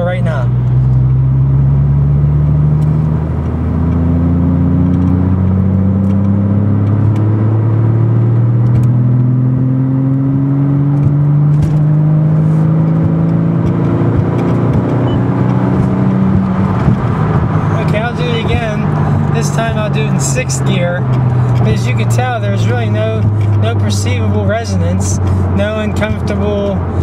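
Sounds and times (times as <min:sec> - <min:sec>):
car engine accelerating: 0:00.0 - 0:27.0.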